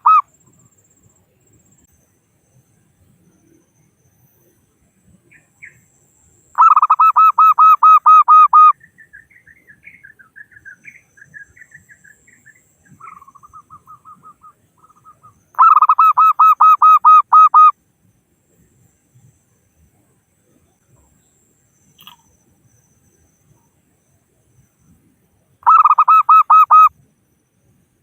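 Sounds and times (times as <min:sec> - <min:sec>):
dove cooing: 0:00.0 - 0:00.2, 0:06.6 - 0:08.7, 0:13.0 - 0:17.7, 0:25.6 - 0:26.9
soft chirps: 0:00.0 - 0:28.0.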